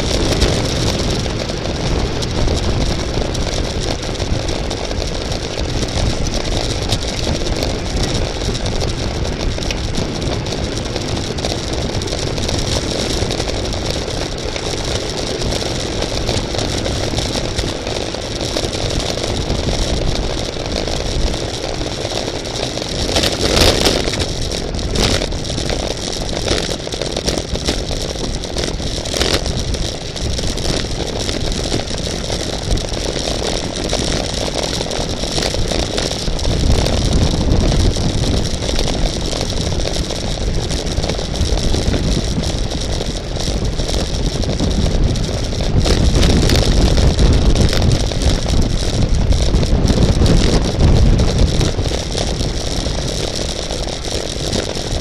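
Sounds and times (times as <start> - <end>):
bicycle road noise: 0.0 - 55.0
rushing wind: 0.0 - 55.0.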